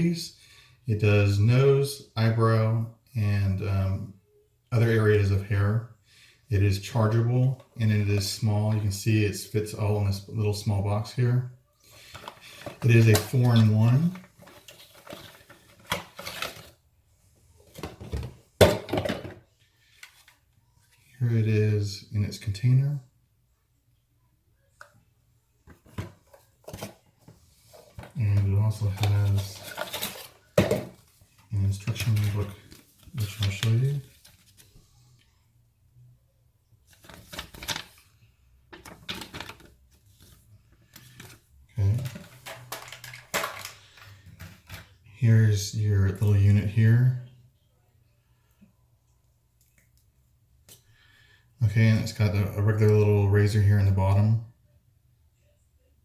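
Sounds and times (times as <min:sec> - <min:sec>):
paper packaging rustling: 0:12.0 - 0:16.8, 0:25.8 - 0:34.9, 0:36.9 - 0:45.0.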